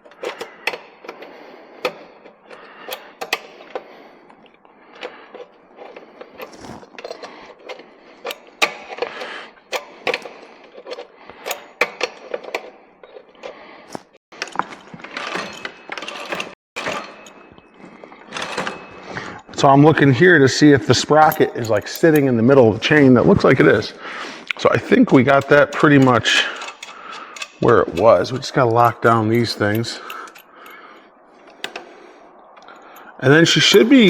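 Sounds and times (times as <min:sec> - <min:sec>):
hand tools clinking on metal: 0:14.4 - 0:23.9, 0:24.6 - 0:31.8, 0:32.6 - 0:34.0.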